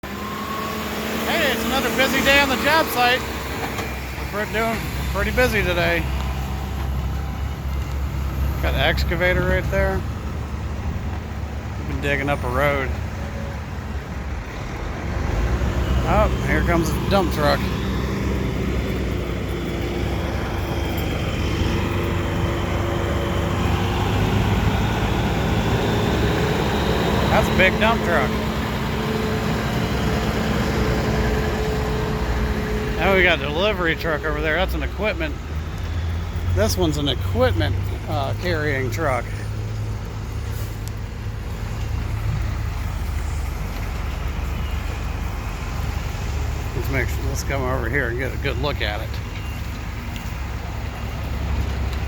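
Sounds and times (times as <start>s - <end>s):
dump truck engine running: 0.0s - 52.0s.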